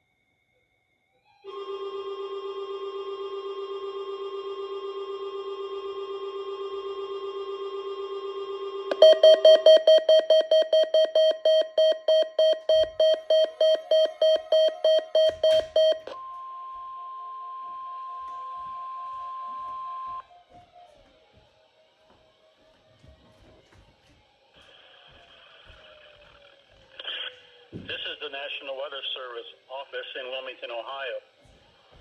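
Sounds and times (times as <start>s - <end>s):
steady warning alarm tone: 1.3s - 32.0s
shrill alarm beeping: 1.4s - 20.3s.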